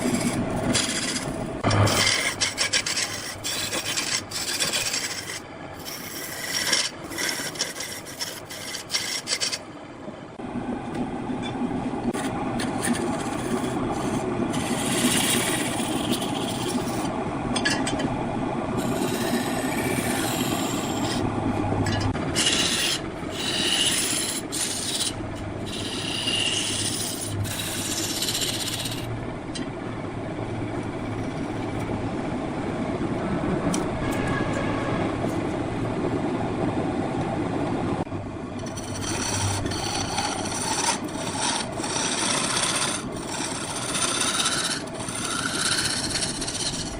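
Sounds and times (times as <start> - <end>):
lathe tool scraping wood: 0.0 - 9.6, 12.1 - 17.1, 18.8 - 21.3, 22.2 - 29.1, 38.6 - 46.9.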